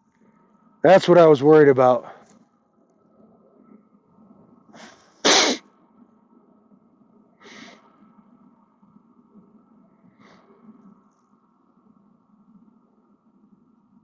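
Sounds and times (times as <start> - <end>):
man sneezing: 5.2 - 5.6.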